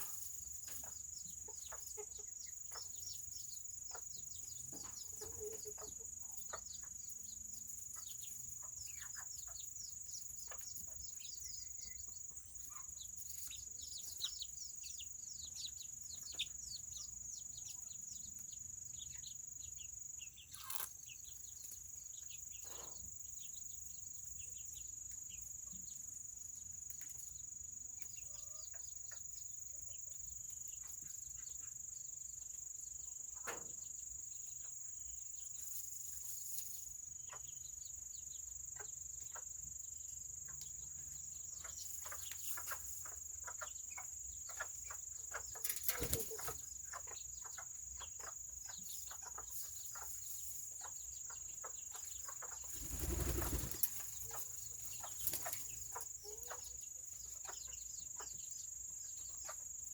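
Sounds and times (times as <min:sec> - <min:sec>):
chickens tapping and clicking: 0:41.6 - 0:56.6
wing flapping: 0:45.7 - 0:46.4, 0:52.7 - 0:54.2.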